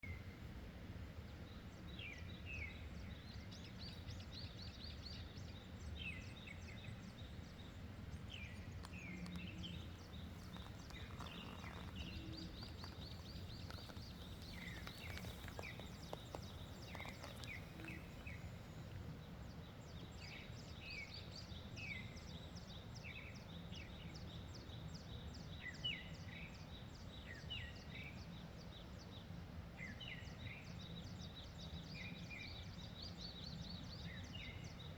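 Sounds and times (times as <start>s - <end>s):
low wind rumble: 6.6s - 20.9s
birds chirping and trilling: 8.3s - 21.0s.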